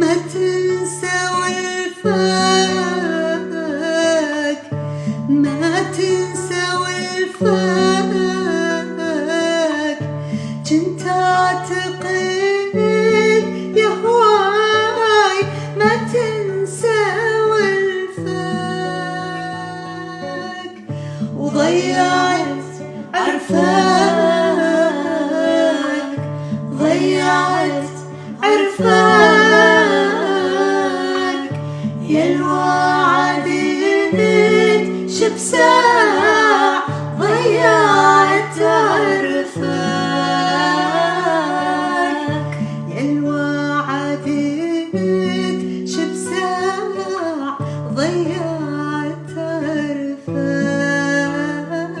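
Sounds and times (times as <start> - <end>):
plucked strings: 21.0 - 47.2
person singing ornamented melody: 21.4 - 47.3.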